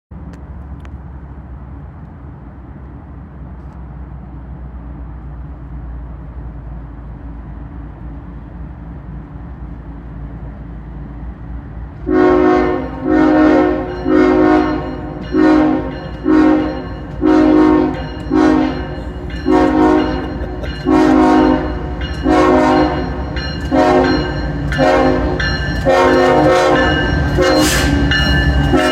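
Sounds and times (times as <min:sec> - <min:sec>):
locomotive air horn blasts: 0:12.1 - 0:28.9.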